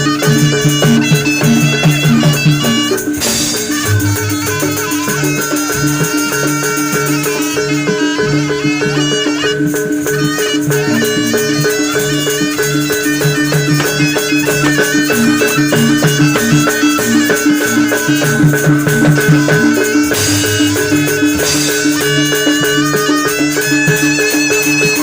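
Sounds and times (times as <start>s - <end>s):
drums keeping a steady beat: 0.0s - 25.0s
fast reedy wind melody: 0.0s - 25.0s
sustained held tones: 10.8s - 24.2s.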